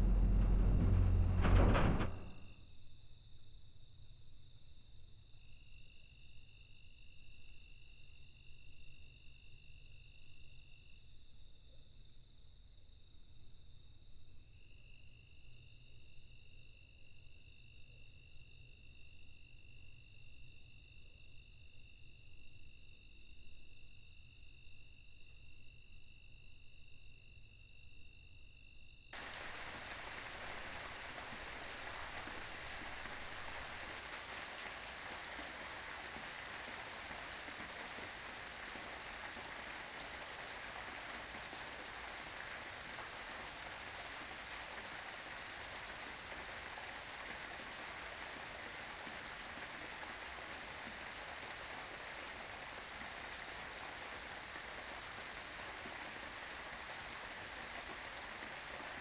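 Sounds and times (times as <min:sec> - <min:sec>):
steady rain falling: 0:00.0 - 0:02.4, 0:29.2 - 0:59.0.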